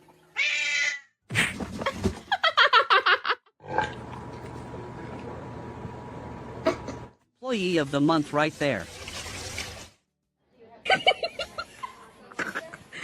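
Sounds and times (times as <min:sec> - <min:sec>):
cat crying squeakily: 0:00.4 - 0:01.1.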